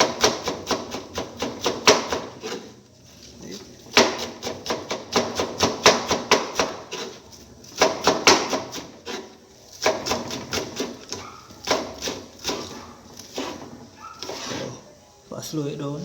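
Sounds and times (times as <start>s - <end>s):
knife chopping on cutting board: 7.8s - 9.2s, 9.8s - 13.6s.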